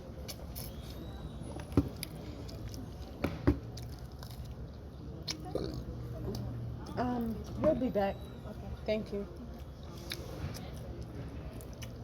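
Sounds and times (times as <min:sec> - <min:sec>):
person chewing: 0:02.0 - 0:06.4, 0:09.5 - 0:10.9.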